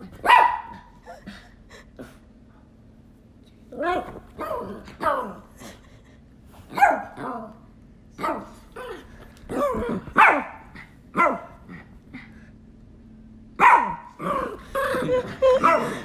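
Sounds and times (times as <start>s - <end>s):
dog barking: 0.2s - 0.9s, 6.7s - 7.3s, 8.2s - 8.6s, 10.1s - 11.5s, 13.6s - 14.2s.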